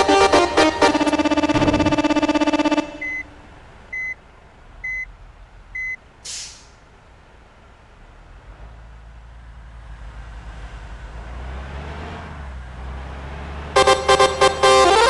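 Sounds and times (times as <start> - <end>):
loud multi-note melody: 0.0 - 3.5, 13.8 - 15.0
low engine rumble: 0.0 - 11.5
vehicle reversing alarm beeps: 1.3 - 4.2, 4.8 - 5.1, 5.7 - 6.0
air brake hiss: 6.2 - 6.8.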